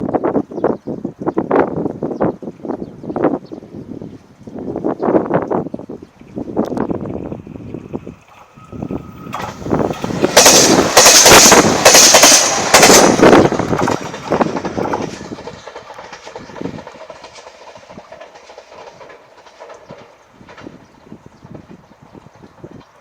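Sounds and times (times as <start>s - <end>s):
diesel train passing: 0.0s - 23.0s
train clattering: 6.6s - 23.0s.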